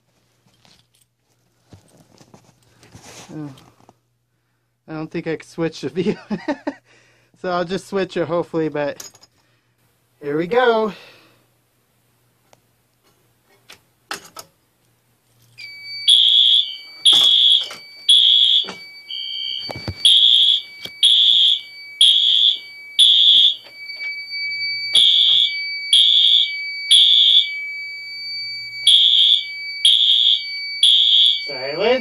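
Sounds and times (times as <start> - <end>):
fire alarm beeping: 15.6 - 32.0
steady high alarm tone: 15.6 - 32.0.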